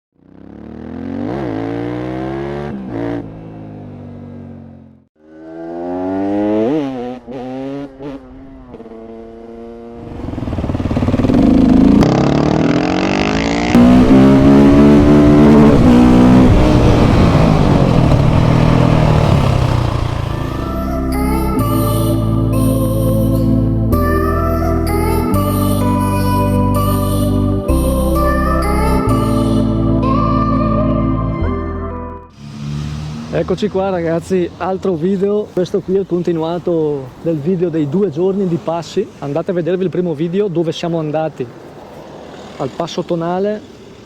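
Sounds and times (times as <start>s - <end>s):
motorcycle engine revving: 0.1s - 21.4s, 32.3s - 35.6s, 41.5s - 44.0s.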